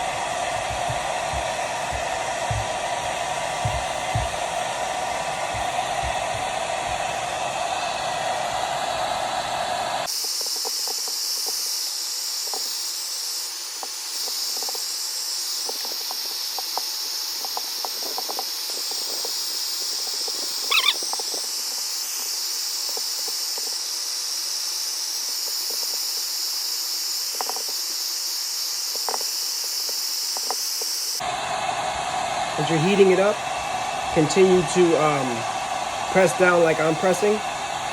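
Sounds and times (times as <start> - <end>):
hair dryer blowing: 0.0 - 37.9
brief squeak: 20.6 - 21.2.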